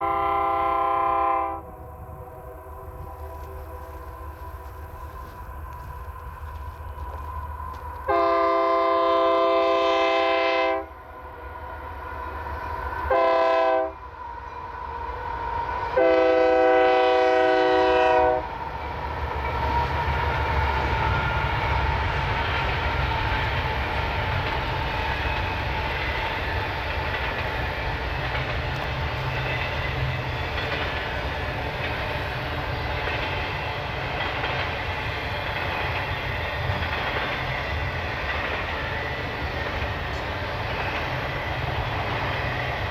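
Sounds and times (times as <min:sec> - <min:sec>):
diesel locomotive horn blasts: 0:00.0 - 0:05.0, 0:08.1 - 0:11.0, 0:13.1 - 0:14.0, 0:15.9 - 0:18.5
train wheels rumbling on rails: 0:00.0 - 0:42.9.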